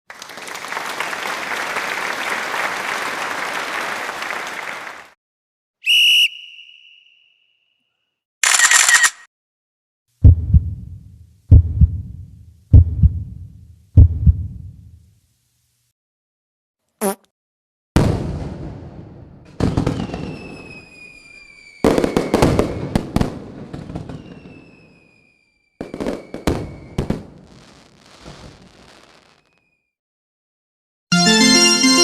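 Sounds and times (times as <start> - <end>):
heartbeat-like double thumps: 10.2 - 14.9.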